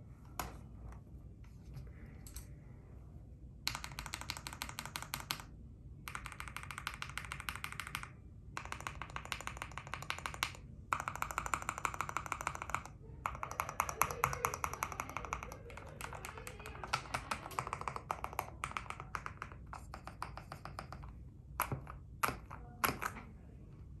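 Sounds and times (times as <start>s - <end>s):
mechanical keyboard typing: 3.6s - 5.5s, 6.1s - 23.2s.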